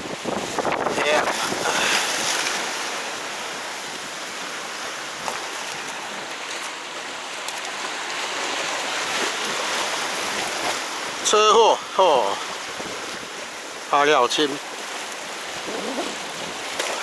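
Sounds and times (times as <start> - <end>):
water rushing at the shore: 0.0 - 17.0.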